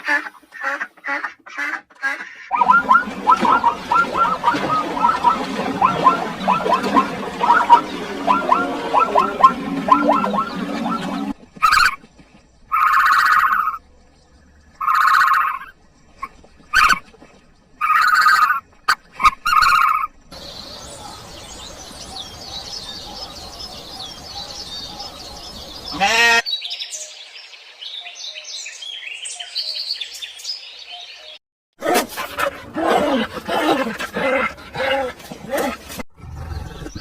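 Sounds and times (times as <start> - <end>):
animal calling: 2.1 - 12.0, 12.7 - 13.8, 14.8 - 17.0, 17.8 - 26.5
birds chirping and twittering: 2.3 - 31.4, 36.2 - 37.0
loud pitched call: 2.5 - 12.0.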